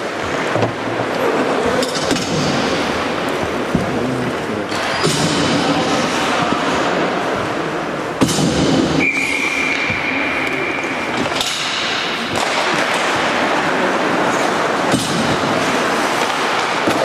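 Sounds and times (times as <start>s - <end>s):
skates scraping on ice: 0.0s - 7.6s, 8.5s - 17.0s
referee whistle blowing: 9.0s - 11.0s.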